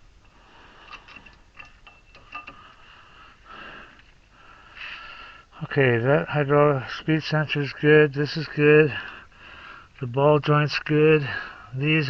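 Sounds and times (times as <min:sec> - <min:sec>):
faint high-pitched hum: 0:00.0 - 0:12.0
tools clicking and tapping: 0:00.9 - 0:02.8.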